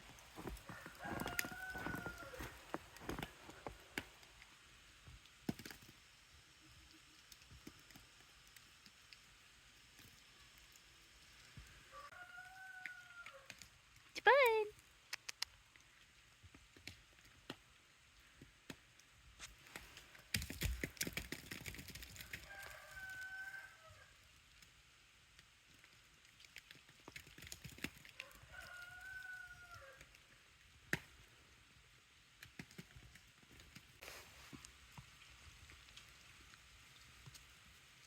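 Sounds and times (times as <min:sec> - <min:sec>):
rooster crowing faintly: 0:00.4 - 0:03.4, 0:11.9 - 0:13.6, 0:22.2 - 0:24.2, 0:28.2 - 0:30.1
faint clicks: 0:15.1 - 0:15.8.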